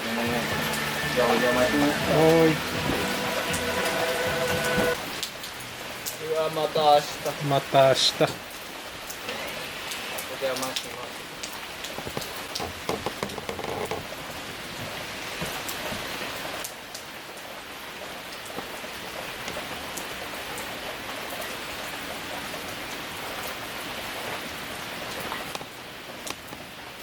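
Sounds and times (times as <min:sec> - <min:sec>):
raindrops ticking: 0:00.0 - 0:21.6
steady rain hiss: 0:00.0 - 0:27.0.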